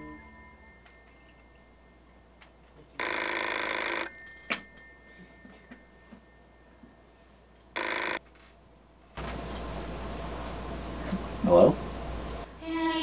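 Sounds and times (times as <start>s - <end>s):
telephone ringing: 3.0s - 6.8s, 7.7s - 8.2s.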